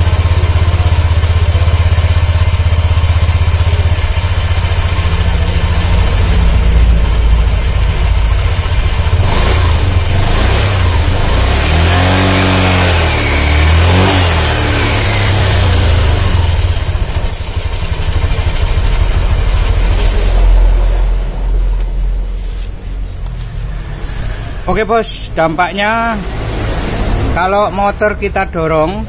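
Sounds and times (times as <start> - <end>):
scooter engine revving: 0.0 - 24.3, 26.0 - 27.8
rough snoring drive noise: 3.4 - 16.8.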